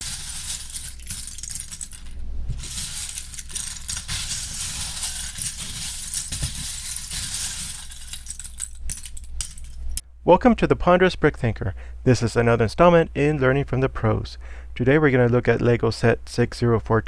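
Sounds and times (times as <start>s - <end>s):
plastic pieces clattering together: 0.0s - 10.0s.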